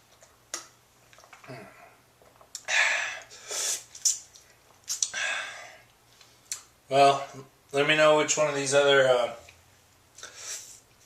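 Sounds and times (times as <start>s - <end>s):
person puffing air: 2.7s - 4.0s.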